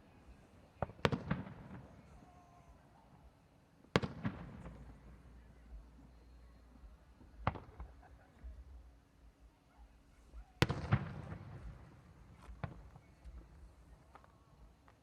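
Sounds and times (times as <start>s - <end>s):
fireworks bangs: 0.8s - 2.2s, 4.0s - 5.1s, 10.6s - 14.2s.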